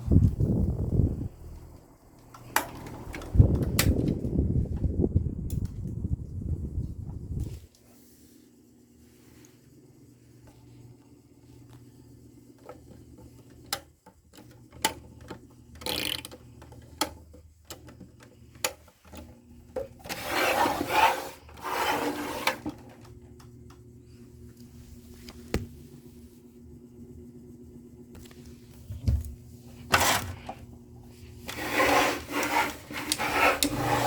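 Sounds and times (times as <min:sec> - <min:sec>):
electric fan motor humming: 0:00.0 - 0:07.8, 0:09.6 - 0:34.0
loud rubbing and scraping: 0:20.1 - 0:22.7, 0:31.5 - 0:34.0.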